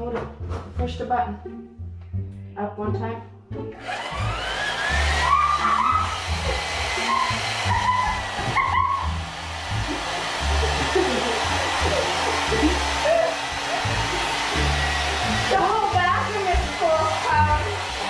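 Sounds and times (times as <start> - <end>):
hair dryer running: 3.8 - 18.0
music with bass beat: 13.8 - 16.2.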